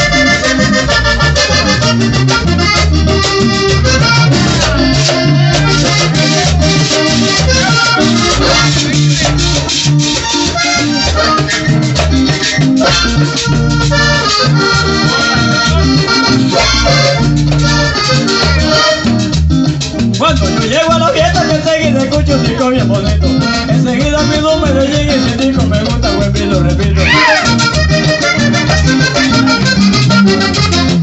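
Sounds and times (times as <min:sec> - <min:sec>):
accordion-led band playing: 0:00.0 - 0:31.0
bass: 0:00.0 - 0:31.0
shaken percussion: 0:00.0 - 0:31.0.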